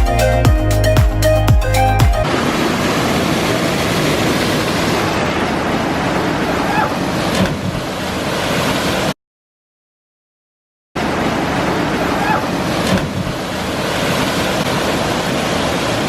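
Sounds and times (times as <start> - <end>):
rushing water roar: 2.2 - 9.2, 11.0 - 16.0.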